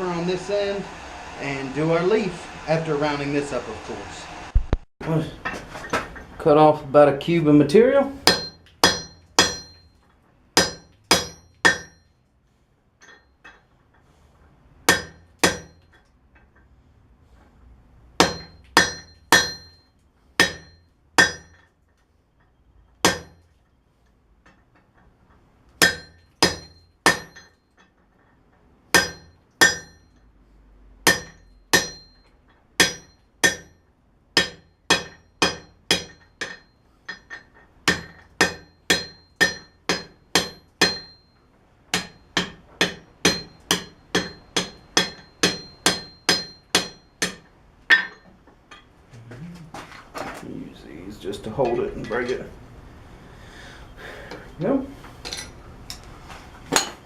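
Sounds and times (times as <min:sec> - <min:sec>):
hammer striking steel on anvil: 0:08.2 - 0:10.0, 0:10.6 - 0:12.1, 0:14.8 - 0:16.0, 0:18.2 - 0:21.7, 0:23.0 - 0:23.4, 0:25.8 - 0:27.6, 0:28.9 - 0:30.2, 0:31.0 - 0:33.8, 0:34.4 - 0:48.9, 0:56.7 - 0:57.0.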